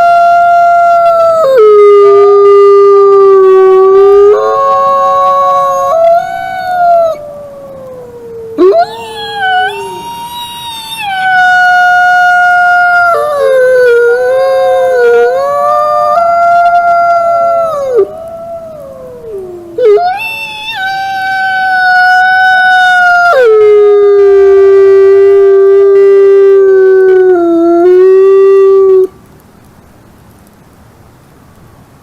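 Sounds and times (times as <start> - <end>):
wolves howling: 0.0 - 24.6.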